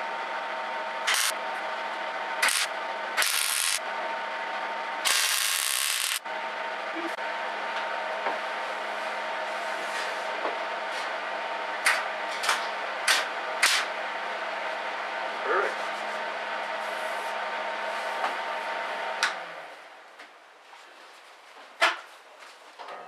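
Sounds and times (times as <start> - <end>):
steady hum: 0.0 - 20.1.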